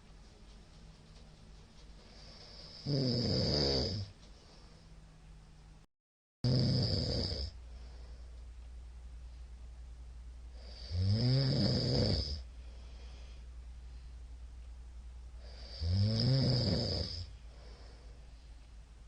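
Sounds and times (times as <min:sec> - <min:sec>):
man snoring loudly: 0:02.5 - 0:04.1, 0:06.4 - 0:07.6, 0:10.6 - 0:12.5, 0:15.5 - 0:17.3.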